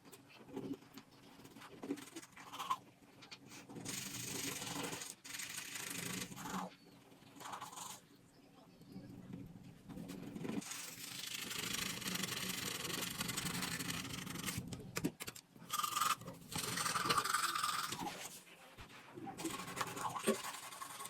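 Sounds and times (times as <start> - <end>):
toothbrush scrubbing teeth: 1.4 - 2.8, 3.6 - 6.7, 7.4 - 8.0, 10.6 - 14.6, 15.7 - 18.4, 19.4 - 21.0.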